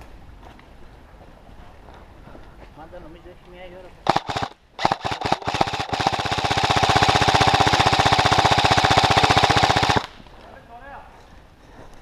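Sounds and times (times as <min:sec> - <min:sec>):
airsoft rifle firing bursts: 0:04.0 - 0:10.3.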